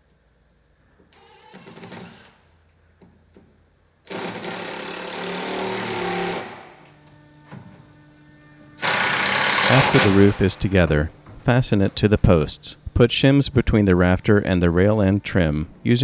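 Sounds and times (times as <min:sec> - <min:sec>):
power drill driving screws: 0:01.2 - 0:02.5, 0:04.1 - 0:08.0, 0:08.6 - 0:10.5.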